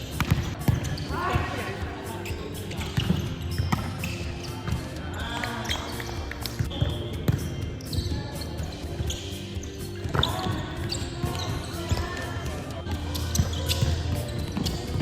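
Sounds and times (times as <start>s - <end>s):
shoe squeaks: 0.0s - 15.0s
volleyball slaps and bounces: 0.1s - 1.5s.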